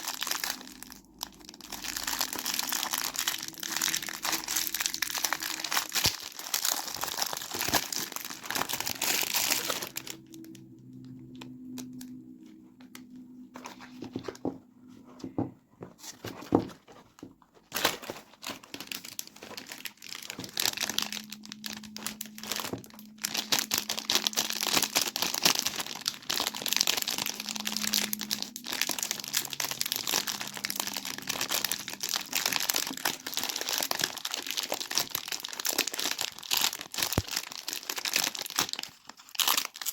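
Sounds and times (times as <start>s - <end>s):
packaging crinkling and tearing: 0.0s - 14.5s, 16.0s - 39.9s.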